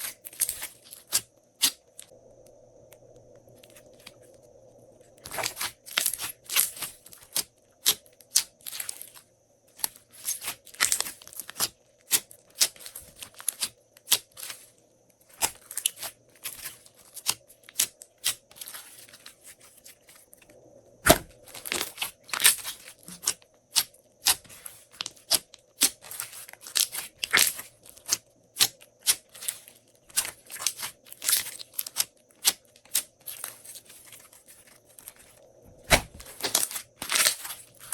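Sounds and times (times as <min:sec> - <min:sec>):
slime squishing with wet crackles: 0:00.0 - 0:02.2, 0:05.2 - 0:37.9
sharp thump: 0:21.0 - 0:21.4.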